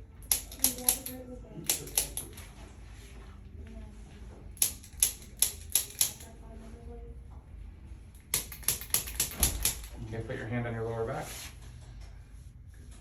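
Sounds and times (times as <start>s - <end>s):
sharp spring-loaded instrument clicks: 0.2s - 2.4s, 4.6s - 6.3s.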